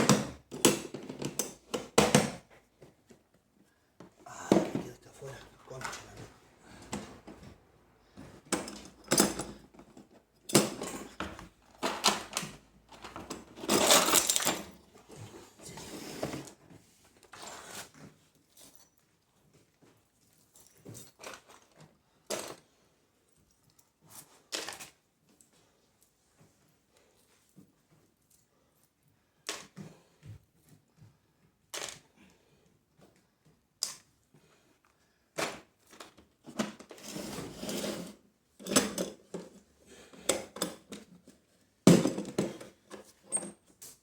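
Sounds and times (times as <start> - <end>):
tools clattering and knocking: 0.0 - 2.4, 4.0 - 7.6, 8.2 - 14.8, 38.6 - 39.6, 40.2 - 44.0.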